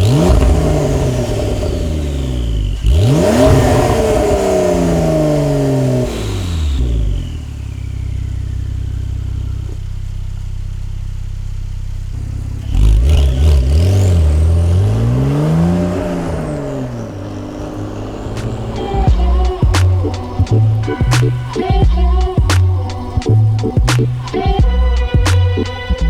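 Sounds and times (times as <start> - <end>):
car engine revving: 0.0 - 26.0.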